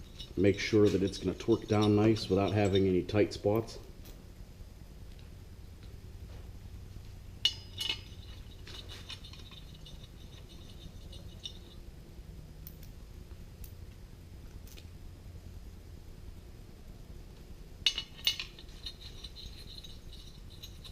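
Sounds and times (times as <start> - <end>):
bolts clinking on metal: 0.0 - 4.2, 7.4 - 11.9, 17.8 - 20.9.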